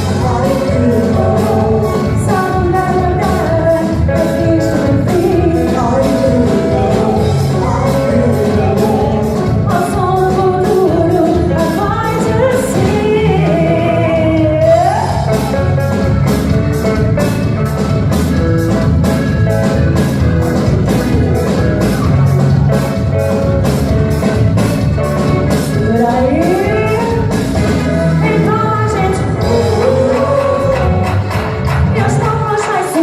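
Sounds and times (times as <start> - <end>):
person singing: 0.0 - 15.8, 25.5 - 33.0
live band playing: 0.0 - 33.0
steady drum beat: 14.2 - 32.7.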